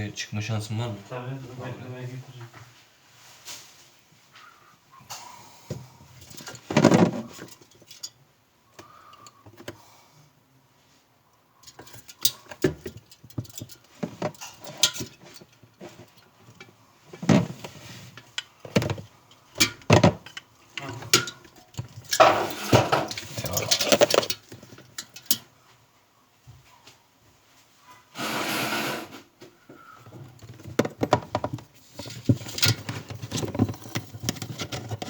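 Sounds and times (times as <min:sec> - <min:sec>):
objects clicking and rattling: 0:06.2 - 0:08.2, 0:11.6 - 0:25.5, 0:30.0 - 0:35.0.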